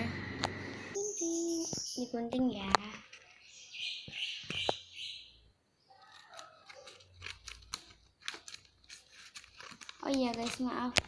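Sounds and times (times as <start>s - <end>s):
scissors cutting cardboard: 6.0s - 10.7s
scissors snipping: 6.0s - 11.0s.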